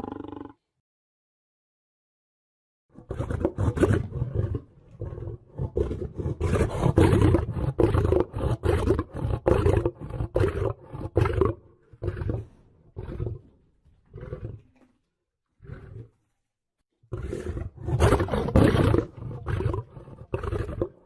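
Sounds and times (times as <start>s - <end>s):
lion roaring: 3.0s - 14.8s, 15.6s - 16.2s, 17.1s - 21.0s.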